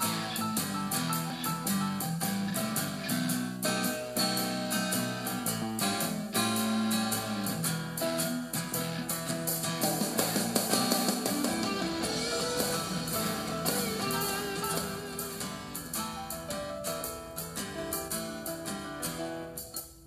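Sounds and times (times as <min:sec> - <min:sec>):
guitar music with steady beat: 0:00.0 - 0:20.0.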